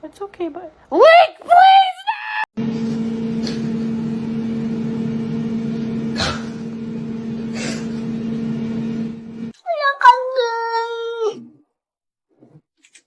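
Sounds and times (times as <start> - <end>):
motor hum: 2.6 - 9.5.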